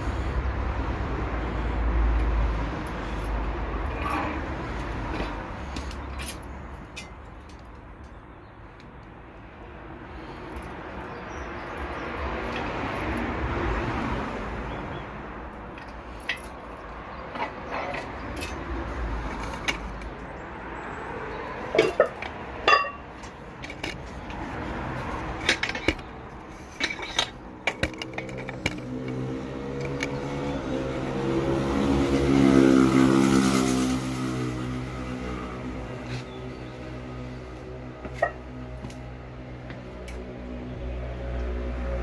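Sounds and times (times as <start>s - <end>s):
metallic clicks and knocks: 25.3s - 30.2s.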